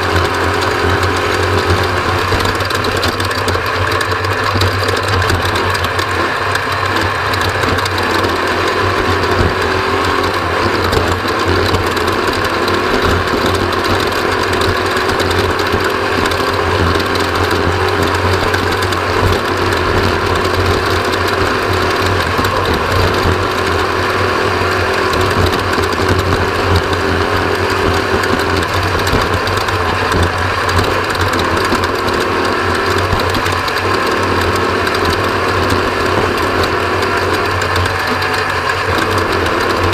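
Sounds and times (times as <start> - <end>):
race vehicle engine running: 0.0 - 39.9
mechanical rattle: 0.1 - 39.9.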